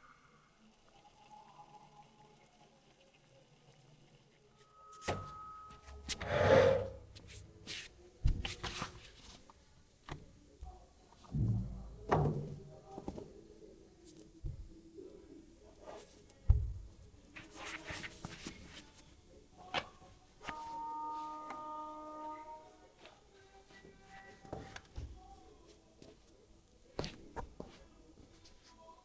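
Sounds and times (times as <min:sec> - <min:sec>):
scrape or rustle: 0:05.8 - 0:07.9.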